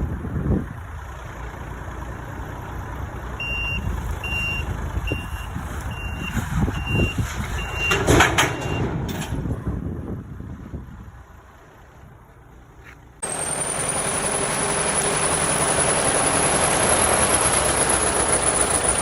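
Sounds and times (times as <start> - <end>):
low engine rumble: 0.0 - 19.0
reversing alarm beeping: 3.4 - 9.0.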